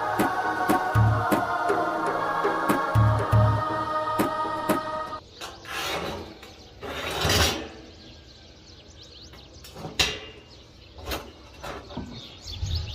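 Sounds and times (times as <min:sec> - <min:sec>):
rushing scraping noises: 0:00.0 - 0:08.0
birds chirping: 0:00.0 - 0:12.9.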